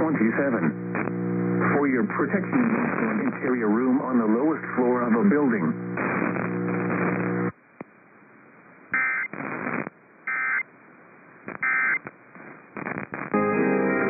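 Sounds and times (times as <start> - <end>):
steady hum: 0.0 - 13.4.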